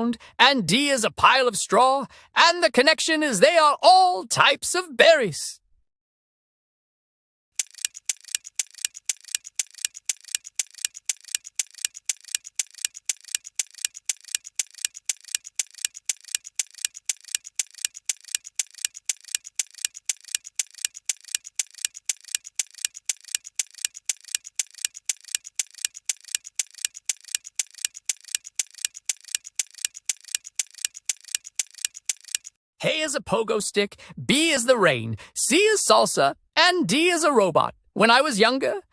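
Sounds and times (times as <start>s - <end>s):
clock ticking: 7.6s - 32.5s.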